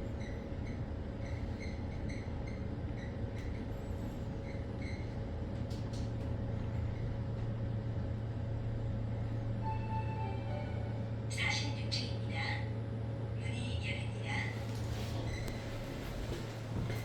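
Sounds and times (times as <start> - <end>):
elevator cabin hum and rushing: 0.0 - 17.0
steady higher tone: 9.6 - 11.3.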